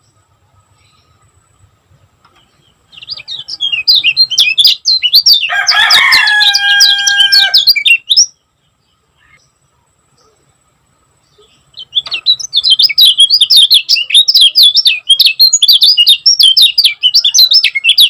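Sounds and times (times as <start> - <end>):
bird chirping: 0.0 - 18.0.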